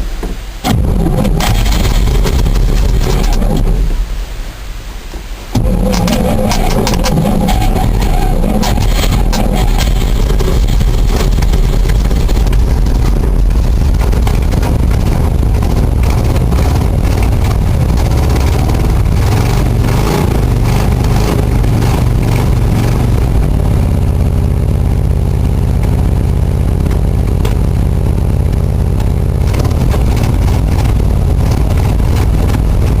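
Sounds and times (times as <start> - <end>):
truck engine idling: 5.6 - 33.0.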